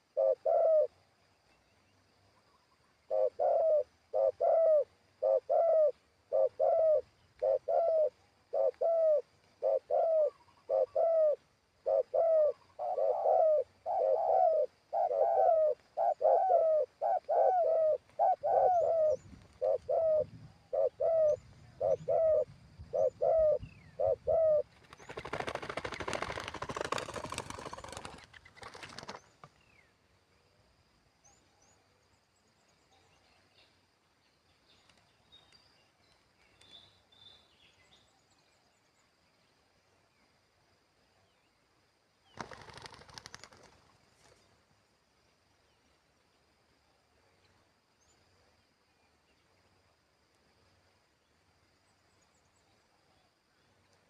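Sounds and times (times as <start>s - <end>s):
dove cooing: 0.0s - 1.0s, 3.1s - 28.2s.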